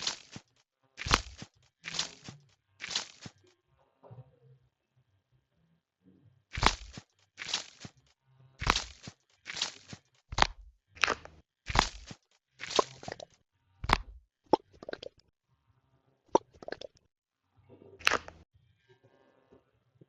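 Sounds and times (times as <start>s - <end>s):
squishy toy squishing: 0.0s - 3.4s, 6.6s - 8.0s, 8.6s - 15.2s, 16.4s - 17.0s, 18.0s - 18.4s.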